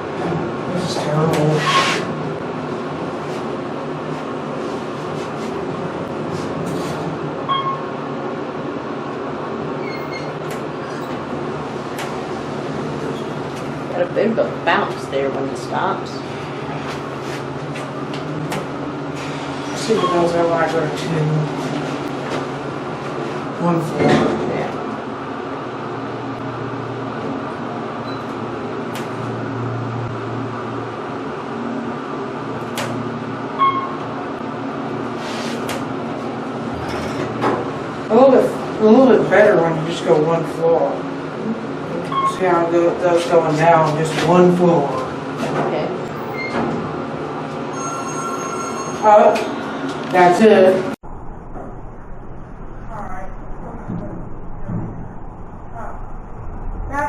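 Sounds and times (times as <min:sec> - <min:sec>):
elevator car rumbling: 0:00.0 - 0:57.0
short elevator tone: 0:07.5 - 0:08.0, 0:33.6 - 0:34.0, 0:47.7 - 0:49.3.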